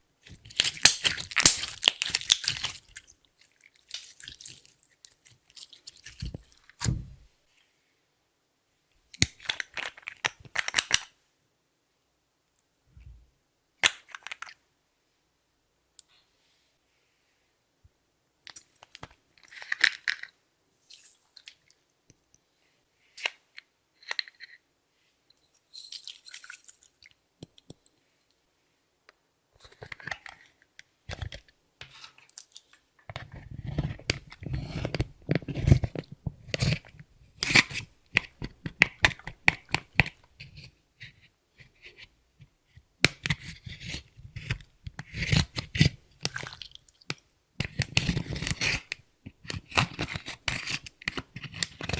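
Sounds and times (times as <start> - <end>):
hands squishing sticky slime: 0.4 - 7.1, 46.2 - 47.0
slime clicks and crackles: 0.5 - 2.8.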